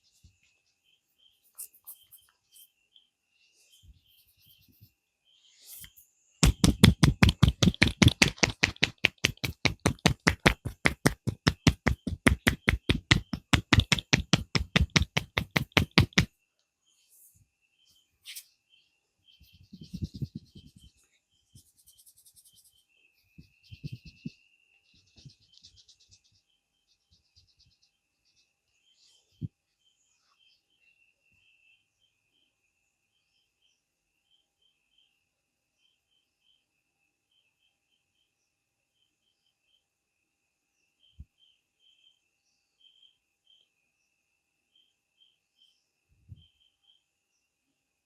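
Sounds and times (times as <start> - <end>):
rapid hand strikes of head massage: 6.4 - 16.3
soft taps and rubs: 6.4 - 16.3, 19.5 - 21.0.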